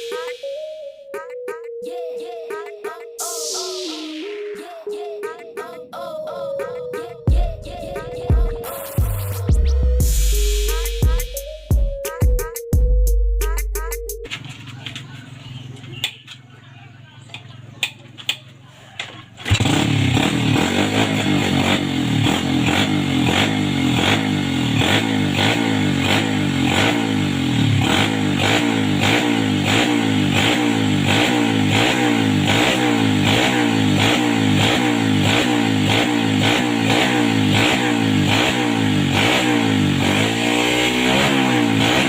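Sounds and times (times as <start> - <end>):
motorcycle engine running: 19.4 - 42.0.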